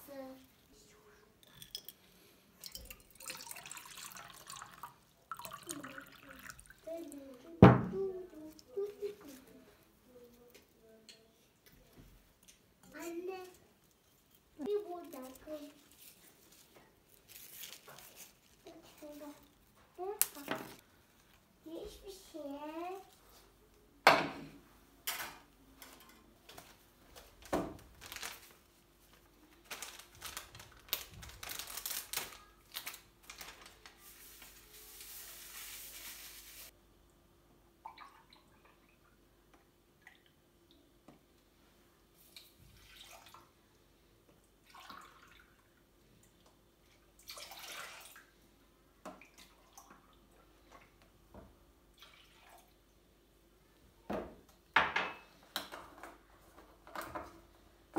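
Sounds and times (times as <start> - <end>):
water running: 2.6 - 7.4, 34.2 - 36.7
dishes clinking and knocking: 54.1 - 56.0.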